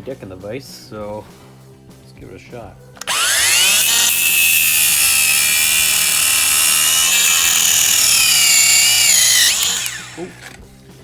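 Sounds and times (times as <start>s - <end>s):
power tool whining cutting plastic: 3.0s - 10.6s.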